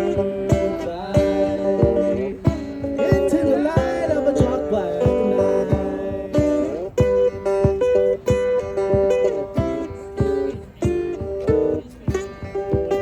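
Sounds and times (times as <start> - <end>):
person singing: 0.0 - 6.9
acoustic guitar music: 0.0 - 13.0
low thump on the beat: 0.0 - 13.0.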